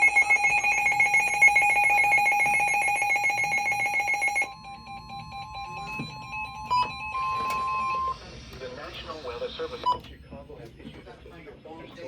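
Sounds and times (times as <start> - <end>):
faint steady beep: 0.0 - 8.2
rapidly pulsing electronic alarm: 0.0 - 10.0.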